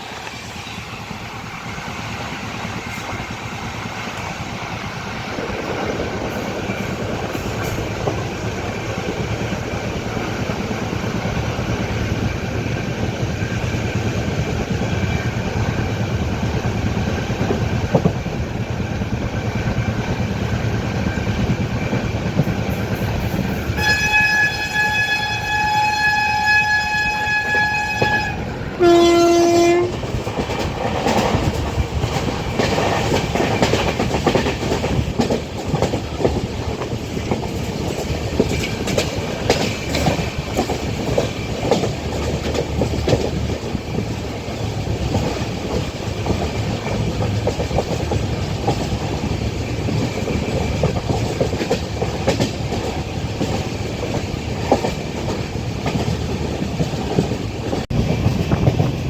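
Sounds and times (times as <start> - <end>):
train wheels clattering: 0.0 - 26.1, 27.0 - 59.0
train horn blast: 23.7 - 30.0.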